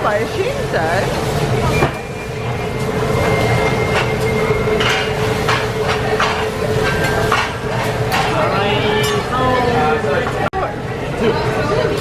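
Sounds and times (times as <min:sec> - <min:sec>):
background chatter: 0:00.0 - 0:12.0
metal utensils clanking on a griddle: 0:02.8 - 0:09.4.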